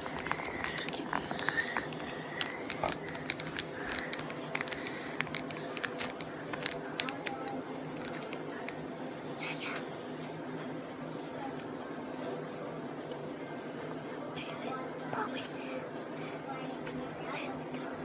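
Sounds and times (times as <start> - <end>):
faint steady hum: 0.0 - 18.0
slime squishing and clicking: 0.1 - 8.8.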